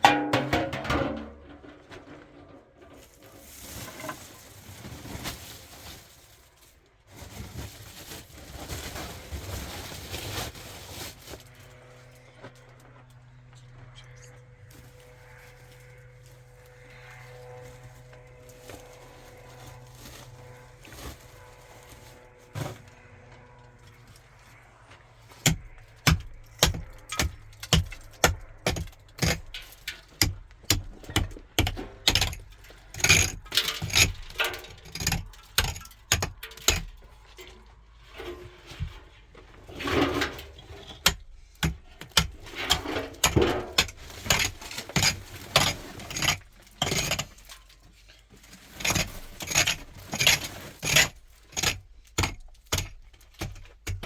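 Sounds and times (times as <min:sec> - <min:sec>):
scraping: 0:00.0 - 0:11.9, 0:25.3 - 0:54.0.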